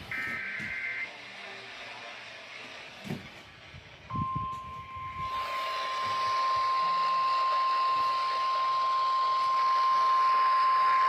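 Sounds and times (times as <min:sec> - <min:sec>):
steady high alarm tone: 0:00.1 - 0:01.1, 0:04.1 - 0:11.0.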